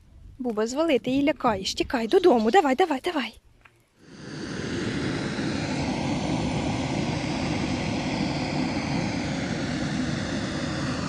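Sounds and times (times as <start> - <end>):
steady mechanical drone: 4.0 - 11.0.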